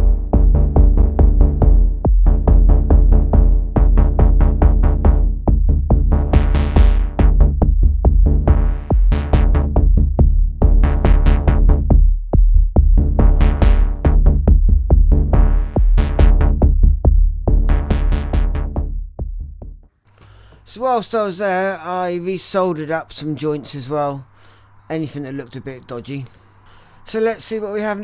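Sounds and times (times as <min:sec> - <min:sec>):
drum machine beat: 0:00.0 - 0:19.9
sustained bass notes: 0:00.0 - 0:19.9.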